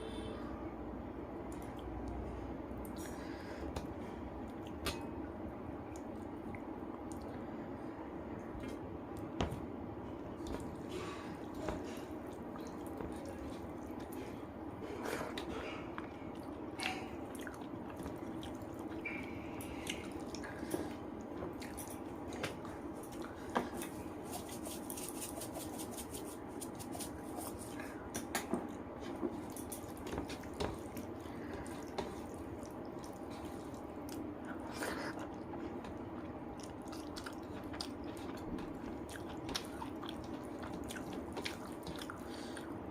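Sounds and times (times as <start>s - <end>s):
low background hum: 0.0s - 42.9s
chewing and wet squishing: 1.4s - 9.4s, 10.1s - 42.9s.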